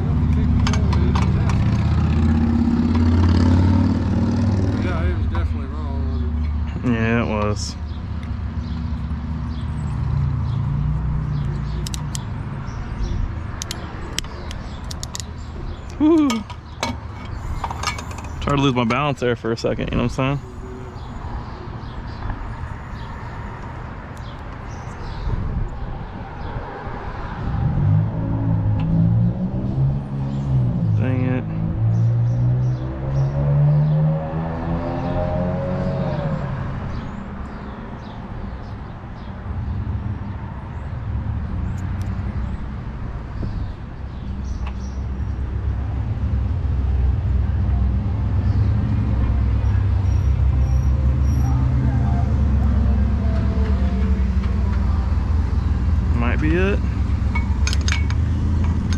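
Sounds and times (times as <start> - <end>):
birds chirping: 0.0 - 58.9
low engine-like rumble: 44.6 - 58.9.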